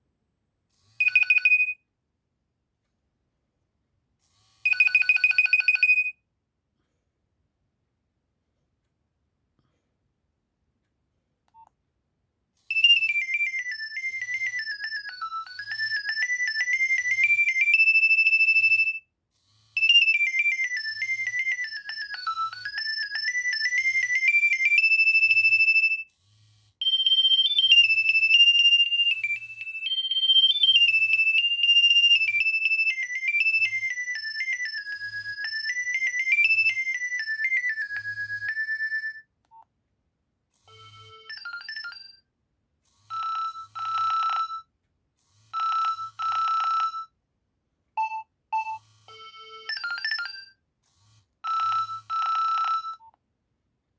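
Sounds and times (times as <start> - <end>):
electronic ringtone melody: 1.0 - 1.8, 4.7 - 6.1, 12.7 - 19.0, 19.8 - 26.1, 26.8 - 39.2, 40.7 - 42.2, 43.1 - 44.6, 45.6 - 47.1, 48.0 - 50.5, 51.4 - 53.0.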